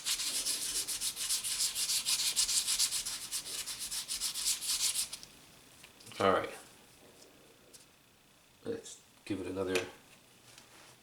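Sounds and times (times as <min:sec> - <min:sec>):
sandpaper rasping on metal: 0:00.0 - 0:05.2.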